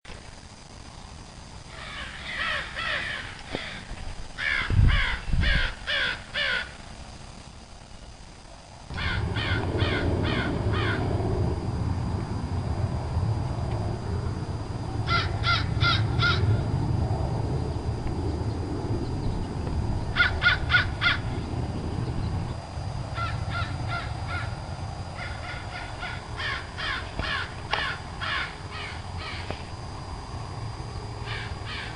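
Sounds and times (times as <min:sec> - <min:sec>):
low background rumble: 0:00.3 - 0:31.9
crows cawing: 0:01.7 - 0:06.8, 0:08.9 - 0:11.1, 0:15.1 - 0:16.6, 0:20.1 - 0:21.3, 0:23.2 - 0:24.6, 0:25.2 - 0:29.6, 0:31.2 - 0:31.9.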